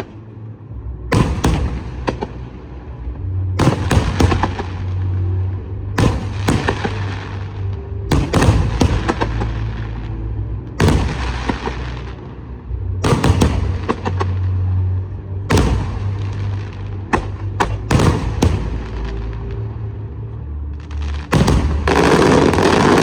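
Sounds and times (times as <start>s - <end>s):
steady low rumble: 0.0s - 23.0s
fireworks bangs: 1.2s - 2.4s, 3.6s - 4.9s, 6.0s - 7.2s, 8.1s - 9.6s, 10.8s - 12.1s, 13.0s - 14.4s, 15.5s - 16.5s, 17.2s - 19.3s, 21.1s - 23.0s
fireworks crackle: 20.8s - 23.0s.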